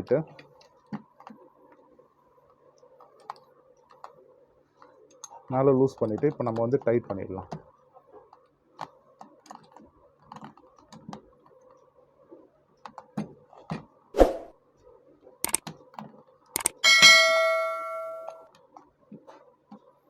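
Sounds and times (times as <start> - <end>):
drill chuck key clicks: 15.4 - 15.6, 16.6 - 16.8
ringing steel clang: 16.8 - 18.4.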